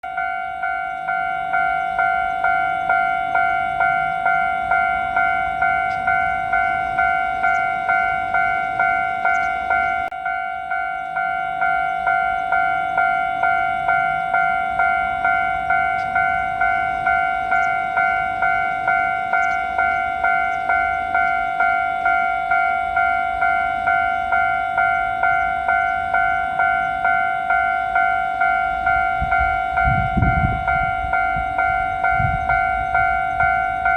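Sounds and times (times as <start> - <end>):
level-crossing alarm bell ringing: 0.0 - 33.9.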